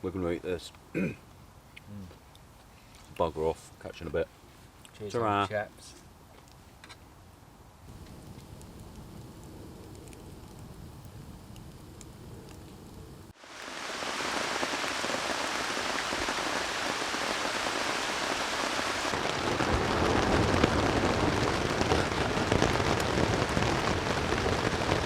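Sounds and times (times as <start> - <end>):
heavy rain pouring: 13.3 - 25.0.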